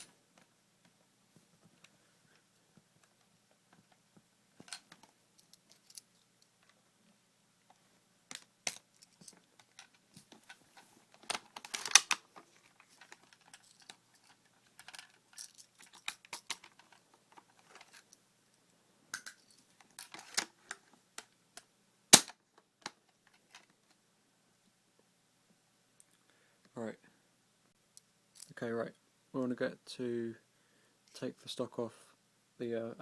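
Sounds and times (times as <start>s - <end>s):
rifle parts clicking and knocking: 8.3s - 18.1s.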